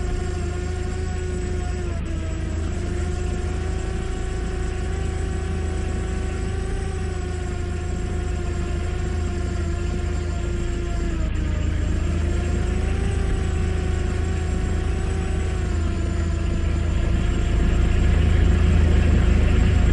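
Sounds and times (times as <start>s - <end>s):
drone propellers buzzing: 0.0s - 19.9s
low rumble: 10.6s - 19.9s.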